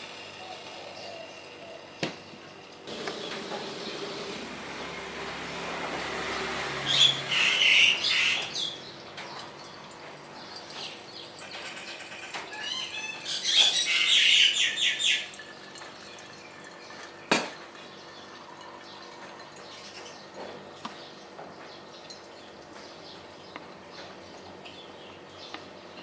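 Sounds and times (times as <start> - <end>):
birds chirping: 0.3 - 4.2, 4.8 - 26.0
rapid high bird calls: 6.8 - 8.9, 10.8 - 15.4.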